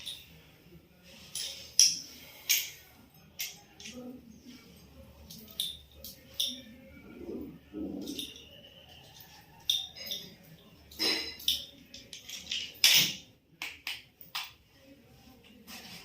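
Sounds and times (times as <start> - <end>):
tools being handled: 0.0 - 0.4, 1.1 - 4.2, 4.8 - 6.9, 7.9 - 14.6.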